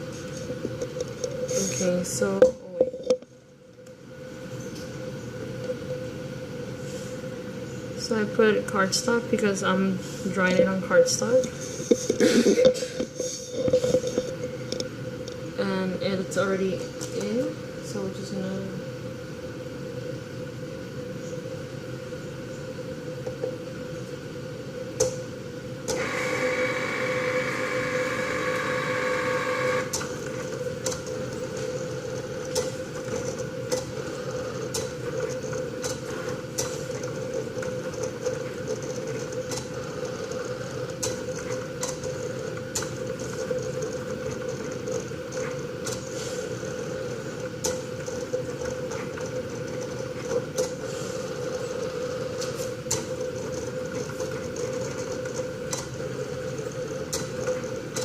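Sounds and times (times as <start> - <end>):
machine whirring: 18.9 - 58.0
cutting machine motor hum: 25.9 - 32.6.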